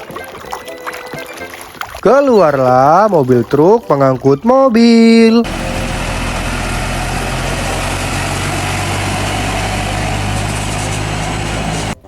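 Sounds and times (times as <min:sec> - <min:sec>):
heavy engine idling: 0:05.4 - 0:12.0.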